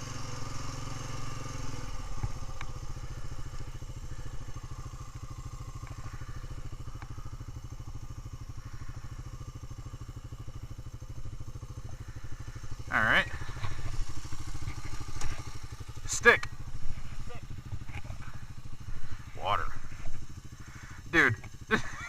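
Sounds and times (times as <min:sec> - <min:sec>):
atv engine idling: 0:00.0 - 0:22.0
faint clicks: 0:02.2 - 0:02.8.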